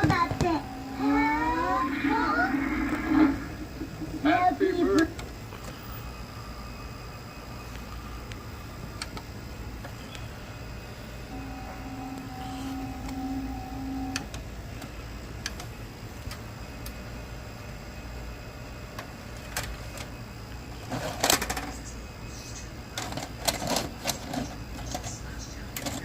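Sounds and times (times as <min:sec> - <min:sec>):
tape mechanism motor whine: 0:00.0 - 0:26.0
mechanical clatter: 0:20.9 - 0:21.8.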